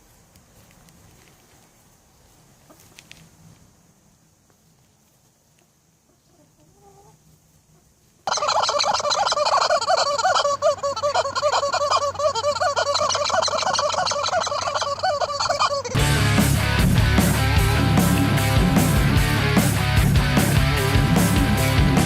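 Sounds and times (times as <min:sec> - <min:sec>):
poultry flock calling: 0:08.3 - 0:22.0.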